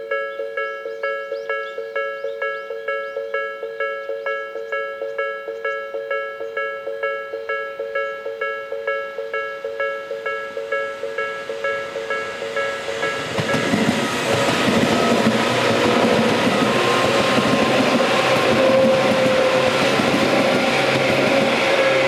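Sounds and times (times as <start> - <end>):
level crossing warning bell: 0.0 - 22.0
train wheels on rails: 9.7 - 22.0.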